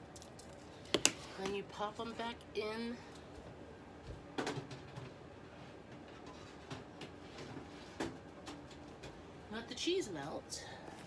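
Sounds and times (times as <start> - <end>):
faint steady hum: 5.2 - 11.0.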